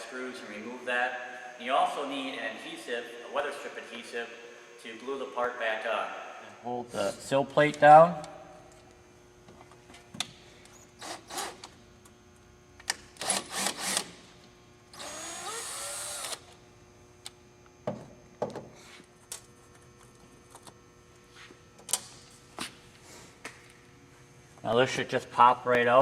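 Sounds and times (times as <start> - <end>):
cordless screw gun whining: 13.2 - 14.1, 14.9 - 16.6.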